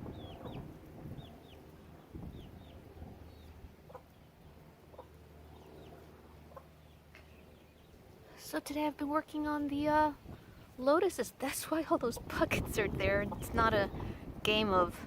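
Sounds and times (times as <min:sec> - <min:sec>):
chickens clucking: 0:00.0 - 0:01.3, 0:03.3 - 0:04.2, 0:04.8 - 0:05.2, 0:05.8 - 0:06.9, 0:11.9 - 0:14.1.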